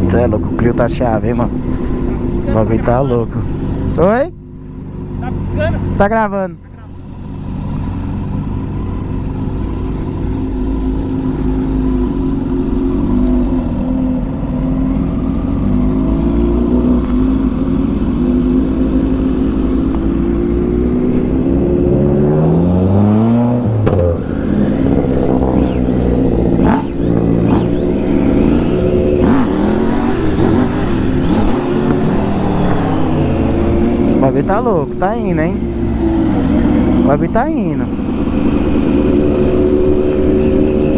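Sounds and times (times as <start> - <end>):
motorcycle and car engines revving: 0.0 - 40.9
sharp exhaust pops: 23.7 - 24.3.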